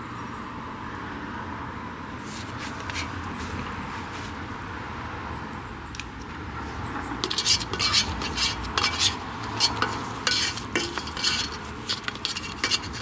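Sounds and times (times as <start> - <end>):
soil and plant pot handling: 2.3 - 4.4, 6.0 - 13.0.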